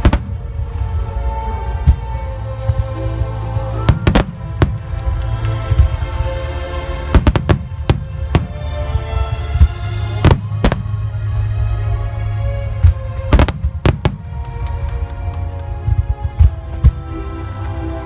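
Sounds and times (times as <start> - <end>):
fireworks bursting in bangs: 0.0 - 0.5, 3.9 - 6.2, 7.0 - 11.2, 13.3 - 14.9
music over loudspeakers: 3.8 - 11.2.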